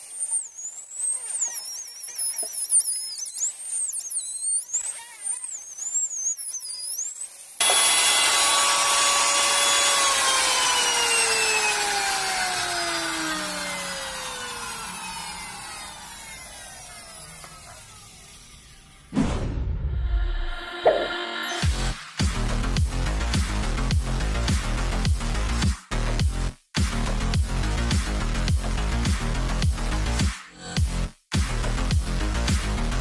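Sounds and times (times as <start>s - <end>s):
faint high whistling tones: 0.0s - 7.6s
power tool motor spinning down: 5.5s - 19.1s.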